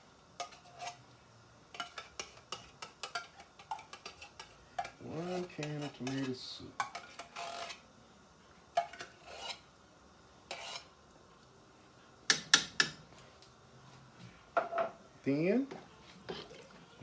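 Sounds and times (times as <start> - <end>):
metal spoon scraping a pot: 0.4 - 1.0, 1.7 - 7.8, 8.8 - 9.7, 10.5 - 10.9, 16.3 - 16.6.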